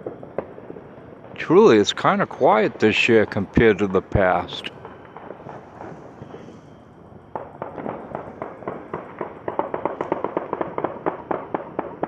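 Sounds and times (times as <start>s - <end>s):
rapid sharp pops: 7.4s - 12.0s.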